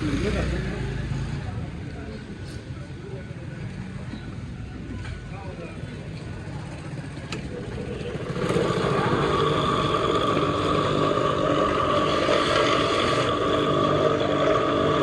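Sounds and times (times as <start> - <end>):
power tool motor whining: 8.1 - 15.0.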